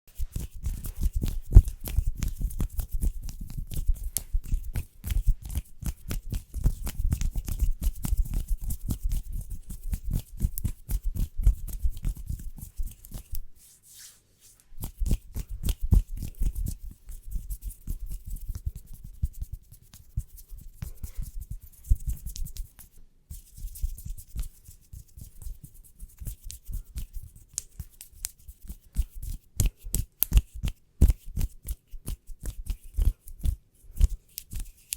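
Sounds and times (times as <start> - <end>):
hand rubbing: 0.1 - 25.3.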